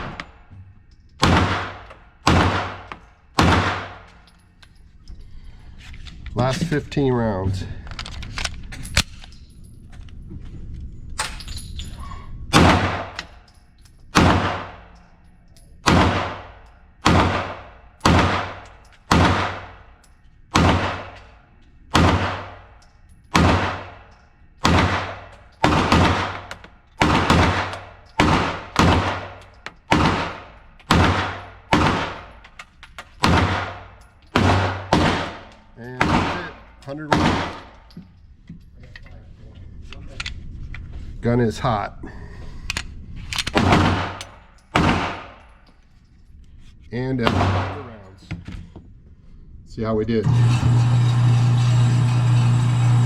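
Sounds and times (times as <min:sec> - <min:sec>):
pistol shots with echoing tail: 0:01.2 - 0:04.1, 0:12.5 - 0:13.2, 0:14.2 - 0:15.0, 0:15.8 - 0:21.3, 0:21.9 - 0:22.7, 0:23.3 - 0:32.4, 0:33.2 - 0:37.7, 0:43.6 - 0:45.5, 0:47.2 - 0:48.0.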